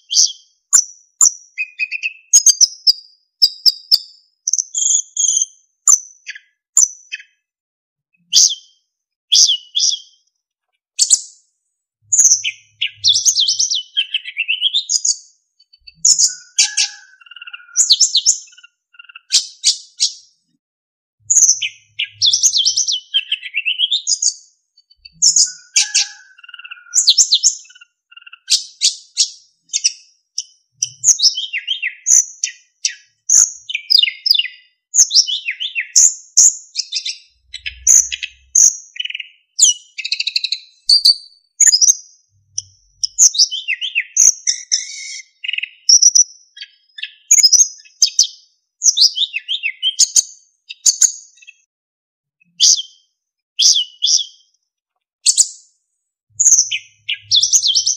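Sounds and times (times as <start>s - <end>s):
bird chirping and trilling: 0.0s - 7.5s, 8.2s - 10.3s, 11.0s - 11.5s, 12.1s - 20.5s, 21.2s - 51.7s, 52.4s - 54.5s, 55.2s - 55.7s, 56.4s - 57.9s.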